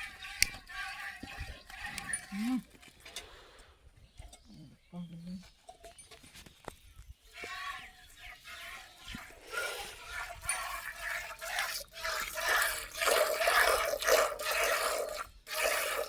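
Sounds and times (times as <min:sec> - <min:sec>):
milk squirting into a pail: 0:09.1 - 0:16.0.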